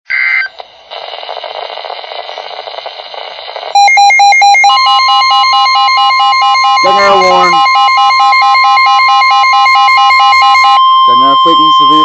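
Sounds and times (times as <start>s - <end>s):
radio static hiss: 0.1s - 3.8s, 6.9s - 7.6s
loud pulsing alarm tone: 3.8s - 12.0s.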